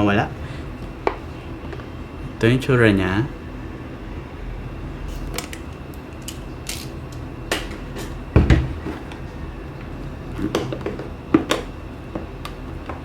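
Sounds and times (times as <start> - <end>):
heavy thump: 8.3 - 9.0.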